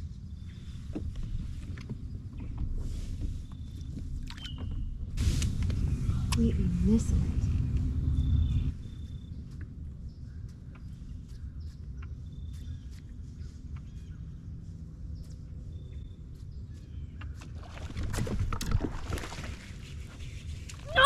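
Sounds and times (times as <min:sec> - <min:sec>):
wind and water rumble: 0:00.0 - 0:21.0
fish splashing: 0:17.6 - 0:20.2.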